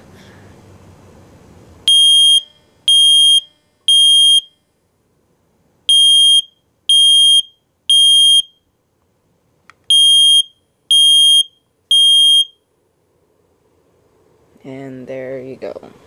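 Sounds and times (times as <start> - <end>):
smoke detector beeping: 1.9 - 4.6, 5.9 - 8.7, 9.9 - 12.6.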